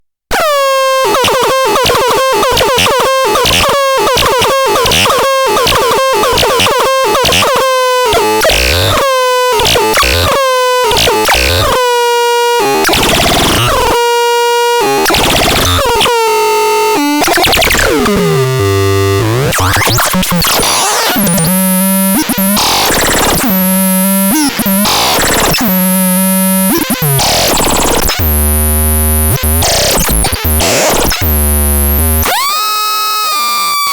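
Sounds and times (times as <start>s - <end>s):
synthesizer notes: 13.0s - 32.5s.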